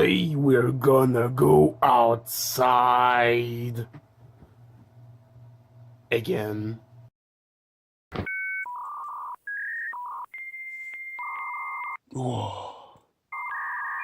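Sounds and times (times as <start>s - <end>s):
dial-up modem tones: 8.2s - 12.0s, 13.3s - 14.0s.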